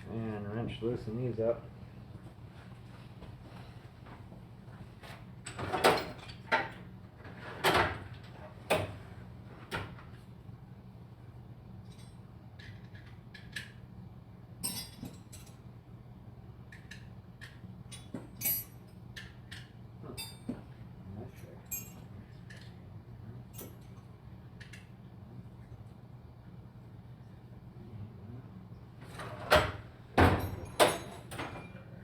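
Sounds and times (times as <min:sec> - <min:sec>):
steady low hum: 0:00.0 - 0:32.0
metal tools clinking: 0:14.6 - 0:15.6, 0:21.3 - 0:22.7.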